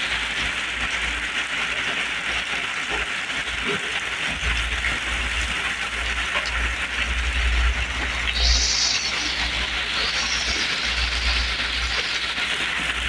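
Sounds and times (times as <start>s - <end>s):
heavy rain pouring: 0.0s - 13.0s.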